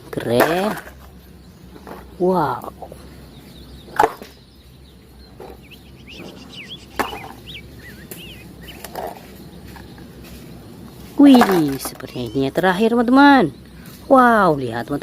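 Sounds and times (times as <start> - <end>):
plastic toys knocking: 11.3 - 12.0.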